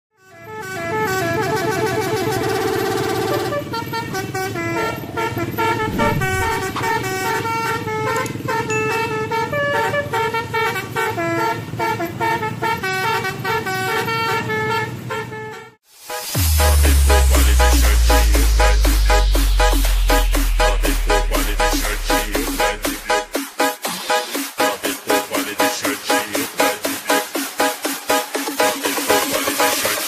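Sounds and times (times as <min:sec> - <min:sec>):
bus air horn playing a tune: 0:00.2 - 0:25.3
low falling tone: 0:05.7 - 0:06.9.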